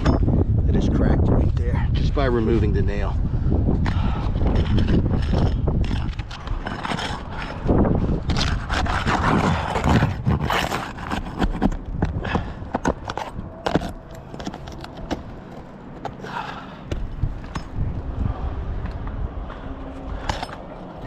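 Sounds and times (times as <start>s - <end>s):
roofing tool scraping shingles: 4.5s - 15.7s.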